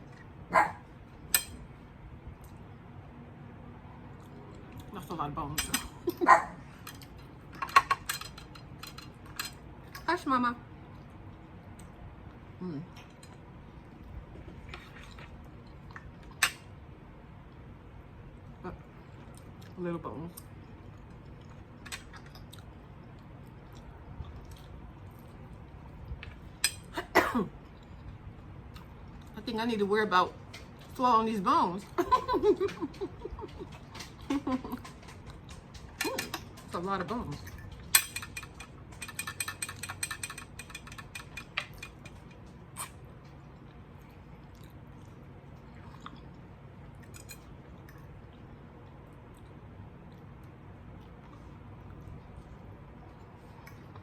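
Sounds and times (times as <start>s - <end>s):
chewing: 13.0s - 16.4s, 19.0s - 26.5s, 32.6s - 36.8s, 37.4s - 54.0s.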